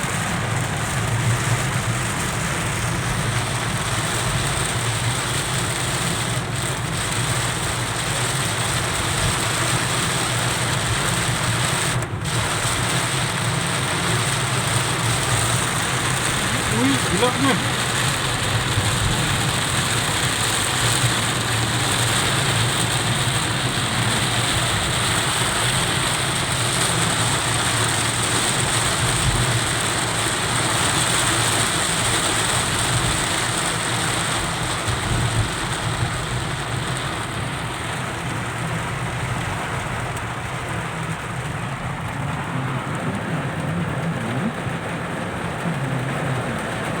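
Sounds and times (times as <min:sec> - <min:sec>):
car engine idling: 0:00.0 - 0:47.0
heavy rain on a car: 0:00.0 - 0:47.0.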